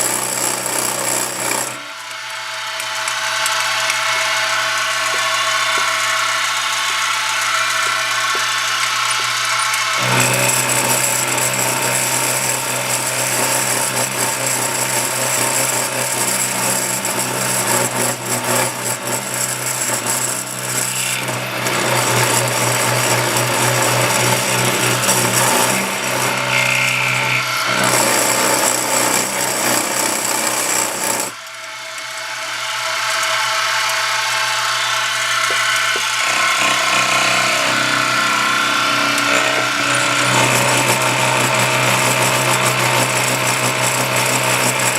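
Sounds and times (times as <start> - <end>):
bit grinding metal: 0.0 - 31.4, 33.0 - 44.9
milling machine motor hum: 0.0 - 44.9.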